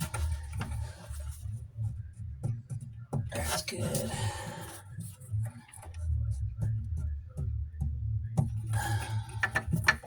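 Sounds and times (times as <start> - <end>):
steady low hum: 0.0 - 10.0
plastic fittings clicking and rubbing: 5.0 - 10.0.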